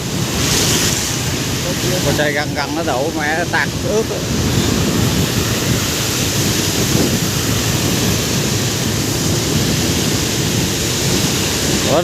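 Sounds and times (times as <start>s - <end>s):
floodwater rushing: 0.0s - 12.0s
wind rumbling on microphone: 0.0s - 12.0s.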